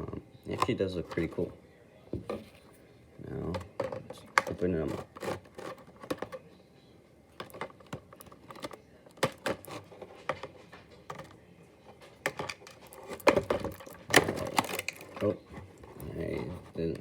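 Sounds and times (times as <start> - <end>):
plastic tray rustling: 0.0 - 1.6, 2.2 - 6.4, 7.3 - 17.0
plastic packaging clicks and taps: 7.4 - 10.5, 12.2 - 15.3.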